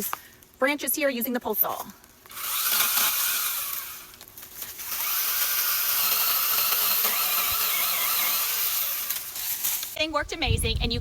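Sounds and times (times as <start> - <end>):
mini chainsaw whining: 2.3 - 9.6.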